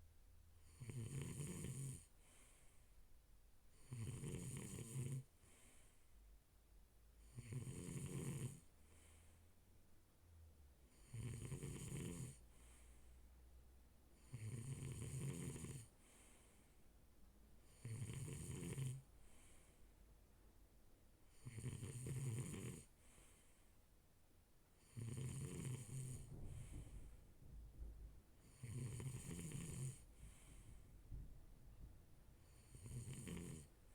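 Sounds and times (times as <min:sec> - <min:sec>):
person snoring: 0:00.6 - 0:02.1, 0:03.8 - 0:05.3, 0:07.2 - 0:08.6, 0:10.9 - 0:12.4, 0:14.2 - 0:16.3, 0:17.7 - 0:19.0, 0:21.3 - 0:22.9, 0:24.8 - 0:26.8, 0:28.4 - 0:30.6, 0:32.4 - 0:33.7
soft breathy out-breath: 0:02.2 - 0:03.0, 0:05.4 - 0:06.3, 0:08.8 - 0:09.6, 0:12.5 - 0:13.4, 0:16.0 - 0:16.9, 0:19.2 - 0:20.0, 0:23.0 - 0:23.9, 0:26.2 - 0:28.8, 0:29.9 - 0:31.4.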